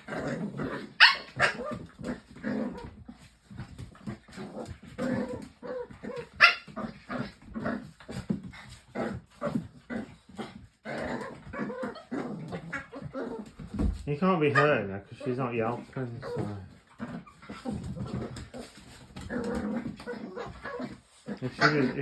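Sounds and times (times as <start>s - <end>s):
dogs growling: 0.0s - 22.0s
dogs barking: 0.9s - 1.7s, 6.1s - 6.8s.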